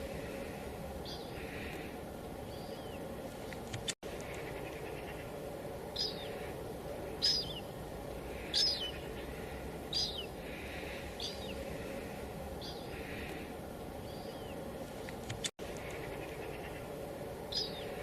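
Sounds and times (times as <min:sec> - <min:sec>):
light drizzle hissing: 0:00.0 - 0:18.0
bird calling high falling call: 0:04.2 - 0:13.5.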